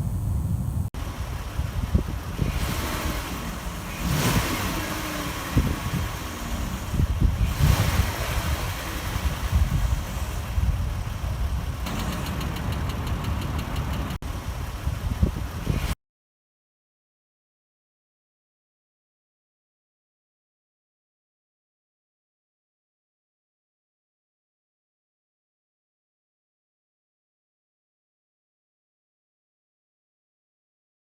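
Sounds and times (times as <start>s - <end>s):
car engine running: 0.4s - 16.0s
fast even engine ticking: 1.0s - 16.0s.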